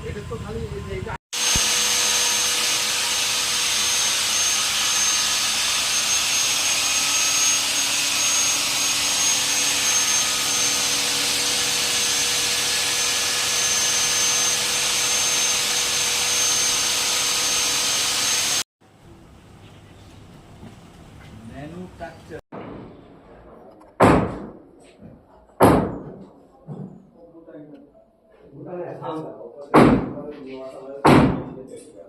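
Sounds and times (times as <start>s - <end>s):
wood router hissing and whining: 1.4s - 18.6s.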